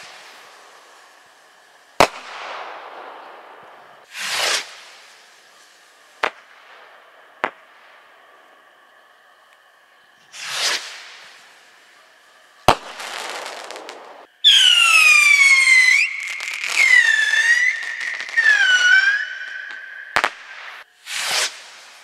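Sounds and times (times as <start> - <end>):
hissing crackling tail: 0.0 - 22.0
shrieking whistles falling in pitch: 14.4 - 20.8
steady high whistle: 14.4 - 21.6
firework bang: 16.0 - 21.8.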